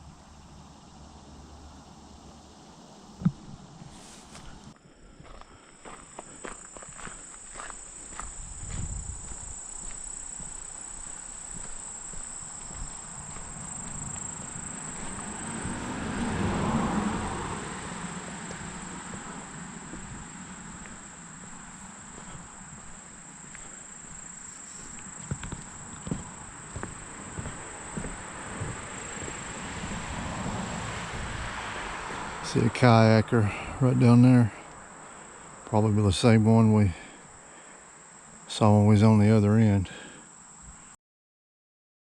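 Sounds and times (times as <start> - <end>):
insects chirping: 0.0 - 41.0
soft footsteps: 3.2 - 32.6
broad rushing swell: 12.1 - 22.6.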